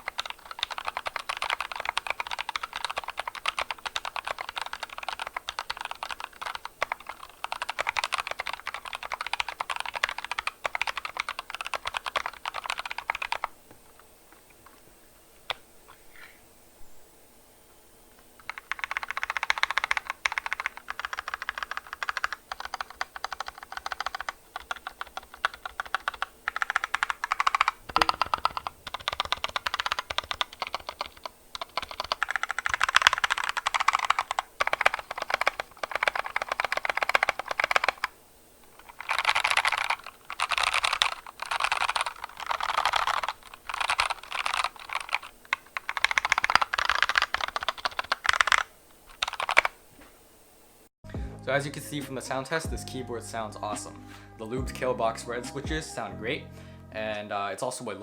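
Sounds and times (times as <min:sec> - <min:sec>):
mechanical keyboard typing: 0:00.0 - 0:13.5, 0:18.4 - 0:49.8.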